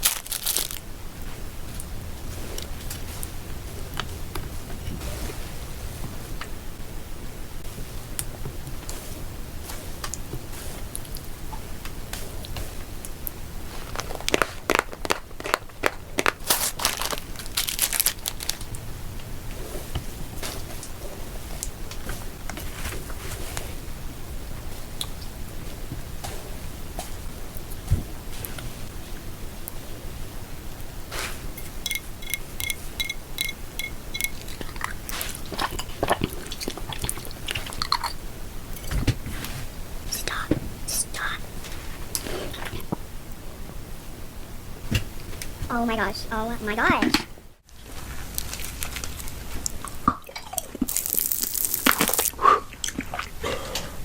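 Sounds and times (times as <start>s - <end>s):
food crinkling and crunching: 0.0s - 0.9s, 13.7s - 18.8s, 31.2s - 39.5s, 47.8s - 53.7s.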